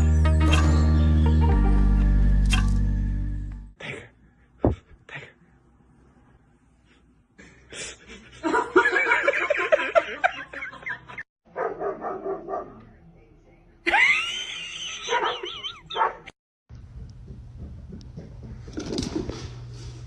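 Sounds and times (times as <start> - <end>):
dog barking and yipping: 11.5 - 12.8, 15.0 - 16.3.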